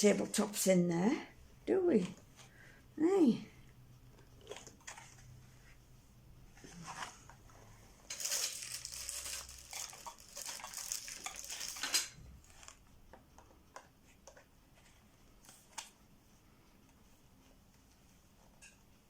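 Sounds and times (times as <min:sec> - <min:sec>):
furniture parts rattling and scraping: 0:08.1 - 0:12.7.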